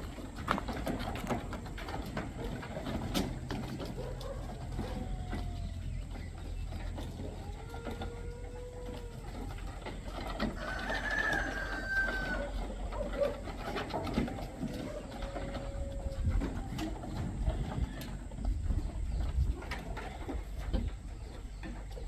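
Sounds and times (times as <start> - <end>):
chickens: 0.0 - 22.0
rooster crowing: 10.4 - 12.7.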